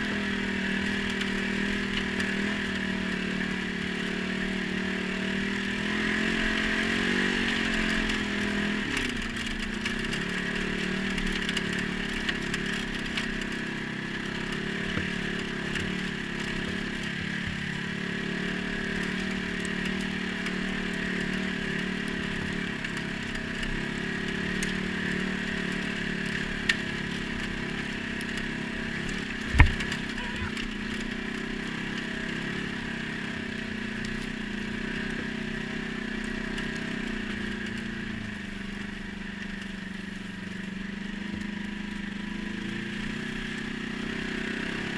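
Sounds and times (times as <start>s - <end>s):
atv engine running: 0.0s - 44.9s
sharp knock: 29.5s - 29.8s.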